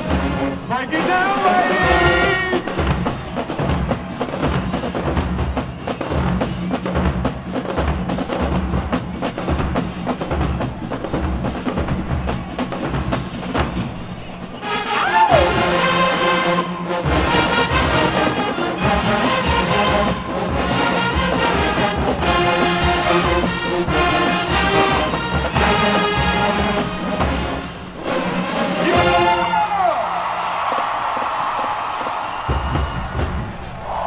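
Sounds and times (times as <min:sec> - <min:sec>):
sliding brass notes: 0:00.0 - 0:04.2, 0:14.3 - 0:30.0
drumline playing fast cadence: 0:00.0 - 0:34.0.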